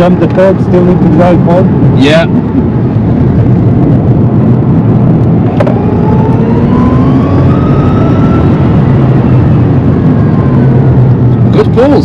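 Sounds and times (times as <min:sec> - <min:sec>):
road and tyre rumble: 0:00.0 - 0:12.0.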